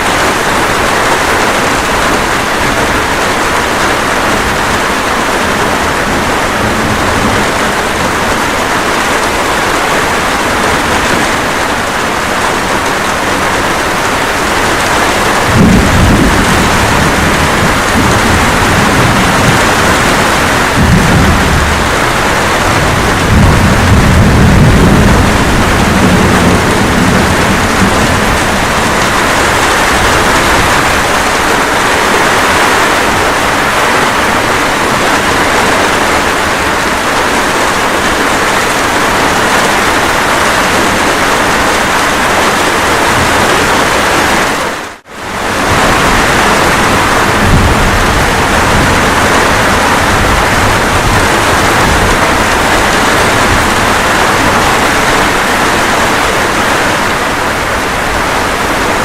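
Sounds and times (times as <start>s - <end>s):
steady rain: 0.0s - 59.0s
distant thunder rumble: 0.1s - 44.4s, 45.3s - 59.0s.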